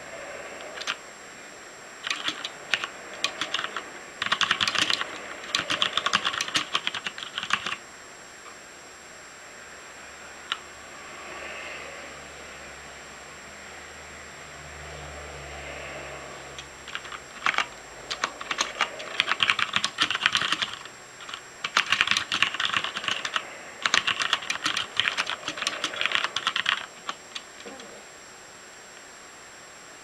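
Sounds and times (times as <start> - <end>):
mechanical keyboard typing: 0.6 - 1.0, 2.0 - 7.8, 16.6 - 27.8.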